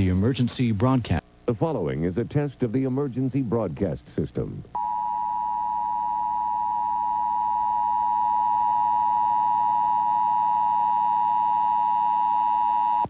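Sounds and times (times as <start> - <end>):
two-tone alarm signal: 4.8 - 13.0.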